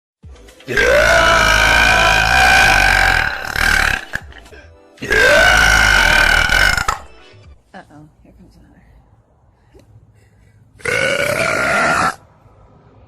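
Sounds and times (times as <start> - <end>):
girl burping: 0.7 - 7.1, 10.8 - 12.2.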